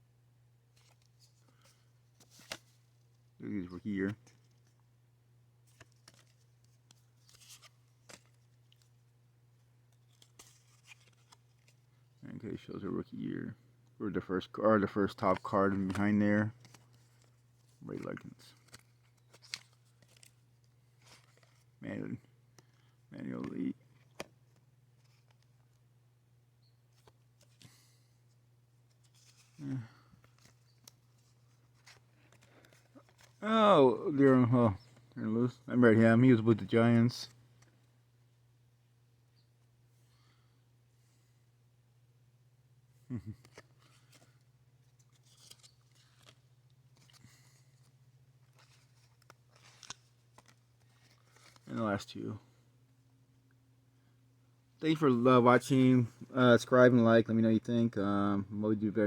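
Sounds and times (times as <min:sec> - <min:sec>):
low steady hum: 0:00.0 - 0:59.0
trading cards rustling and clicking: 0:00.7 - 0:03.2, 0:05.7 - 0:09.0, 0:09.9 - 0:12.0, 0:14.8 - 0:21.8, 0:28.8 - 0:33.4, 0:43.3 - 0:52.0
man saying hmm: 0:43.1 - 0:43.5.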